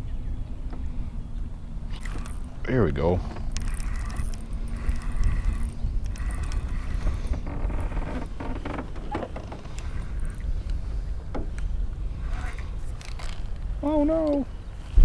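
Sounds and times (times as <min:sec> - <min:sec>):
wind rumble on microphone: 0:00.0 - 0:15.0
fishing reel clicking and creaking: 0:01.9 - 0:10.8, 0:12.2 - 0:14.4.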